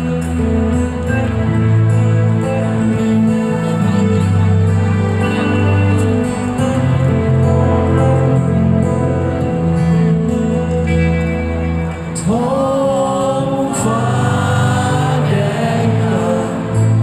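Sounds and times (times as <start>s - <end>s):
guitar and keyboard chords: 0.0s - 17.0s
person singing: 12.1s - 17.0s.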